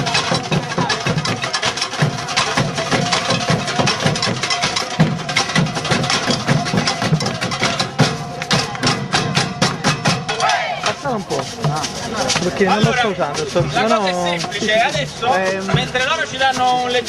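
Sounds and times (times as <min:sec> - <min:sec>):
music with percussive beat: 0:00.0 - 0:17.0.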